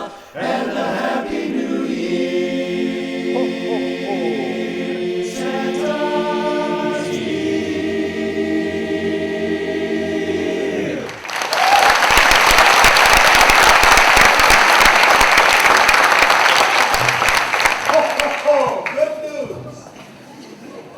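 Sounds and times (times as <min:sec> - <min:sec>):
chorus singing a cappella: 0:00.0 - 0:11.3
audience applause: 0:11.0 - 0:19.1.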